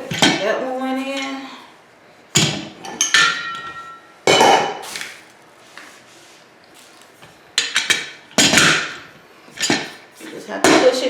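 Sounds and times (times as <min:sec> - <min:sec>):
metallic ring: 0:03.0 - 0:04.1.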